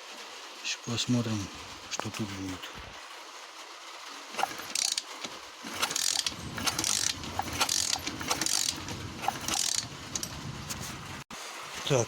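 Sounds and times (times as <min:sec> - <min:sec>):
kick-starter ratcheting: 0:04.4 - 0:10.4.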